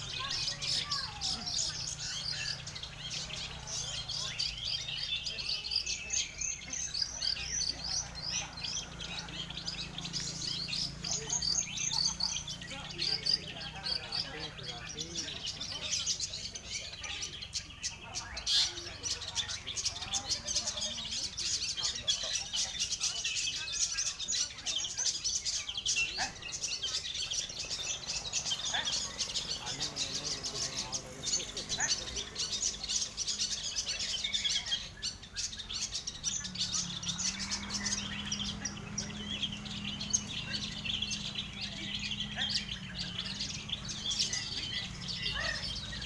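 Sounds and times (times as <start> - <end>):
birds chattering and chirping: 0.0 - 46.0.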